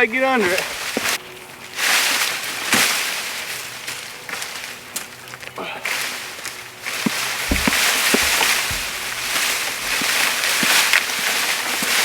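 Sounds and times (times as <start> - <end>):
tree branches rustling and scraping: 0.0 - 12.0
low thumps: 7.1 - 10.3.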